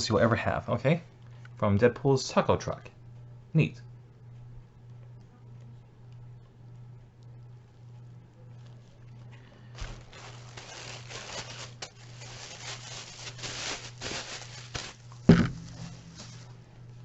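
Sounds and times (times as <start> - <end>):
steady low hum: 0.0 - 17.0
packaging rustling and tearing: 9.8 - 16.6
loud thump: 15.3 - 16.5.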